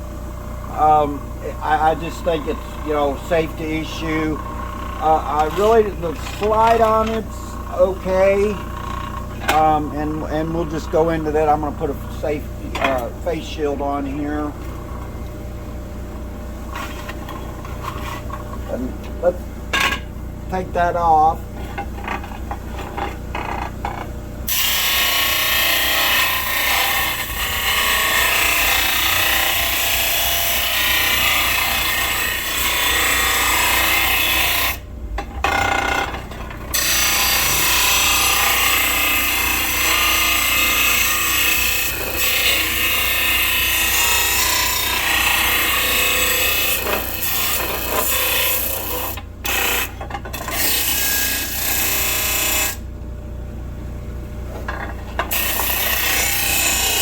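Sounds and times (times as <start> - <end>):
motor low hum: 0.0 - 43.9
sander grinding rasp: 0.7 - 15.0, 16.7 - 19.4, 20.6 - 52.8, 55.2 - 57.0.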